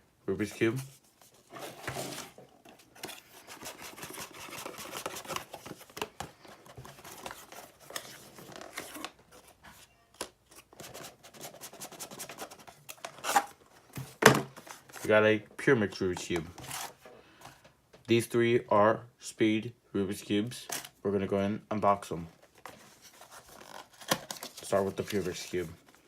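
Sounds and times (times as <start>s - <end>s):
packaging rustling and clicking: 1.6s - 11.1s, 22.4s - 26.0s.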